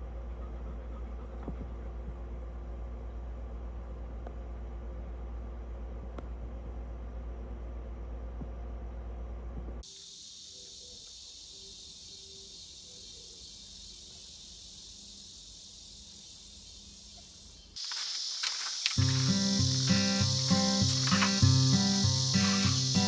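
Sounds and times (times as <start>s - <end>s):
insect chorus: 9.8s - 23.0s.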